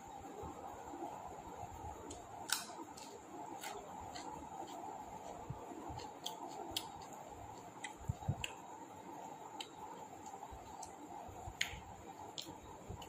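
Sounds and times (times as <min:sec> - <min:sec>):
background hum: 0:00.0 - 0:13.0.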